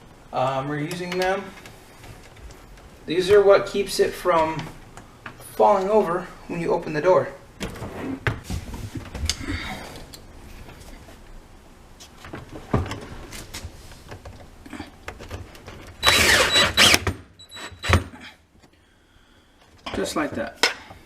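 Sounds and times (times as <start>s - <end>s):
small power tool burst: 16.0s - 17.0s.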